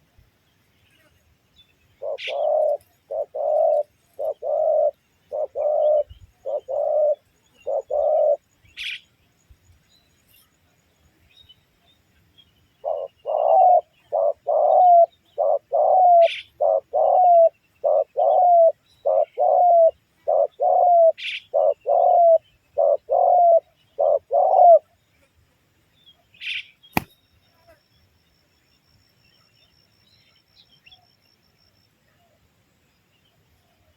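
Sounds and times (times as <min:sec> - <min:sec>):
small bird chirping: 0:00.8 - 0:10.6
dove cooing: 0:02.0 - 0:08.4, 0:12.8 - 0:24.9
sharp click: 0:27.0 - 0:27.2.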